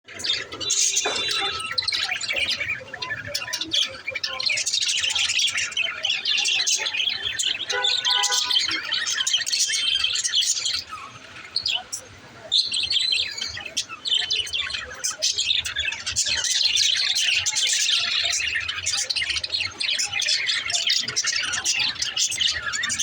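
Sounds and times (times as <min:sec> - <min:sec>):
budgerigars chattering: 0:00.1 - 0:23.0.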